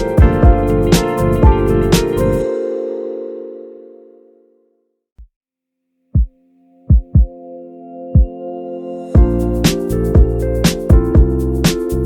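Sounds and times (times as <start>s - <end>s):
background music beat: 0.0s - 3.2s, 6.2s - 12.0s
held chord: 0.0s - 4.8s.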